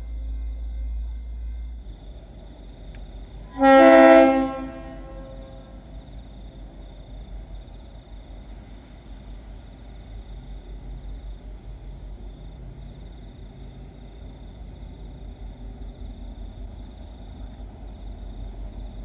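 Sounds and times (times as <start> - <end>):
train horn blast: 3.4 - 6.0.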